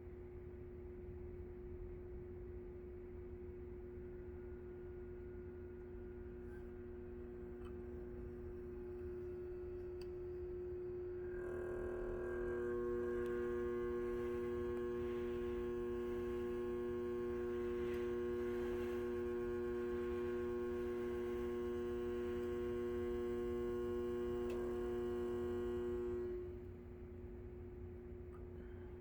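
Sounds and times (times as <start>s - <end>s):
electrical relay buzzing: 11.2s - 26.6s.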